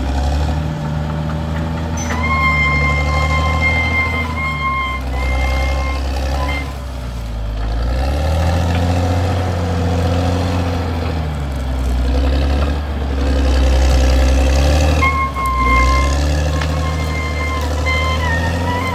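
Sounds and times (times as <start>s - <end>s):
bulldozer diesel engine: 0.0s - 18.9s
reverse alarm beeping: 2.0s - 6.8s, 15.0s - 18.9s.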